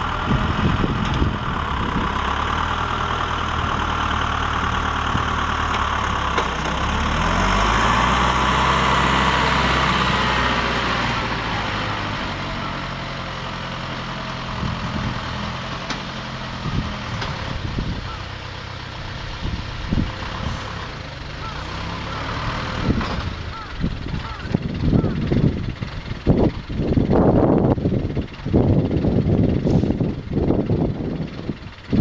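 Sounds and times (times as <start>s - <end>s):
diesel engine running: 0.0s - 32.0s.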